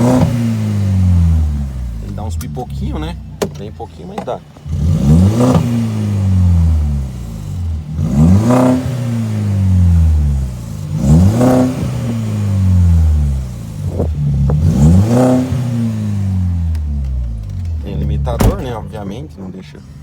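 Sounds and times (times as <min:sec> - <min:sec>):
car engine revving: 0:00.0 - 0:20.0
exhaust pops: 0:11.0 - 0:19.2.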